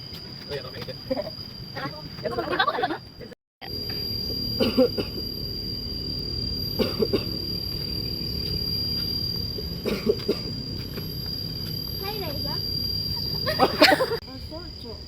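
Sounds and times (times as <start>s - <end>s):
low background rumble: 3.6s - 14.9s
person coughing: 4.6s - 5.2s, 6.8s - 7.4s, 9.8s - 10.5s.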